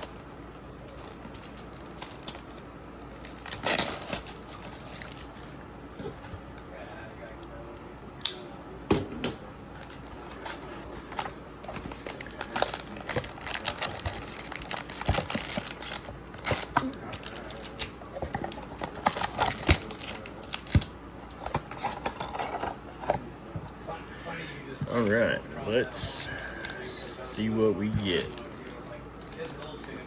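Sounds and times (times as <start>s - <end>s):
plastic wrap and foil crackling: 0.0s - 5.4s, 10.7s - 20.8s, 28.0s - 30.0s.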